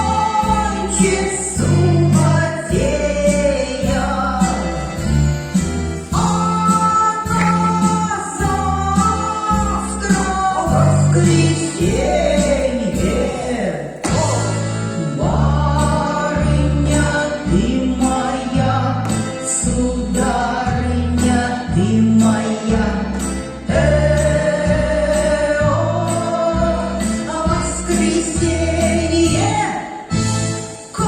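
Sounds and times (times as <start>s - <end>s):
dance music with singing: 0.0s - 23.1s
jingling percussion: 0.0s - 29.5s.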